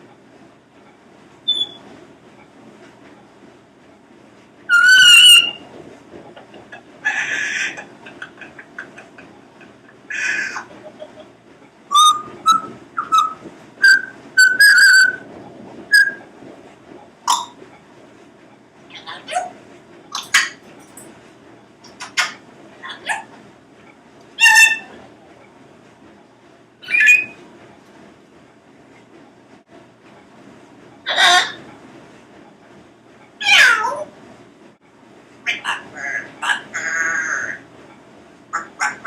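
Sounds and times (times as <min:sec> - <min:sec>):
parrot whistling: 0:01.5 - 0:01.8, 0:04.7 - 0:05.6, 0:11.9 - 0:15.3, 0:15.9 - 0:16.3, 0:26.8 - 0:27.4
parrot calls and clicks: 0:20.1 - 0:21.1, 0:21.8 - 0:23.3.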